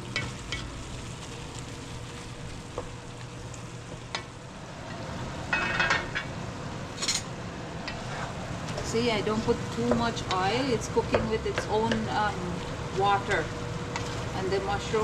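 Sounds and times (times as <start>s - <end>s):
food sizzling in a pan: 0.0s - 15.0s
spoon scraping a pan: 7.9s - 8.4s.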